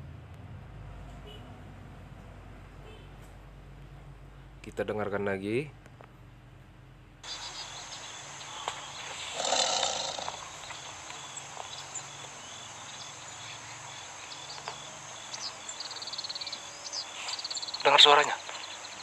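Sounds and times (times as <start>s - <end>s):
insects buzzing: 7.2s - 19.0s
small birds chirping: 7.2s - 19.0s
tiger roar: 9.2s - 10.6s.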